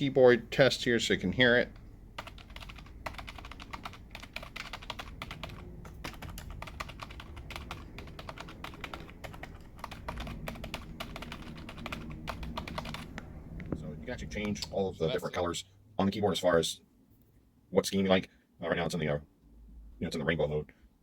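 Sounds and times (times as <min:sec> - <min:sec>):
keyboard typing clicks: 0:02.2 - 0:13.3.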